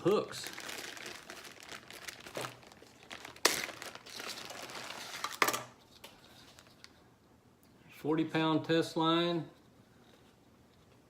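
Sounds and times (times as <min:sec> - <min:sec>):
packaging crinkling: 0:00.0 - 0:06.9.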